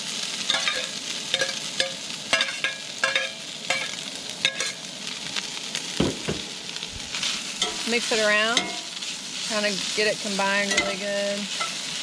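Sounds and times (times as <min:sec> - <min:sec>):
meat and onions sizzling in a pan: 0:00.0 - 0:12.0
utensil scraping and clacking on pan: 0:00.5 - 0:04.8, 0:07.6 - 0:09.0, 0:10.6 - 0:11.9.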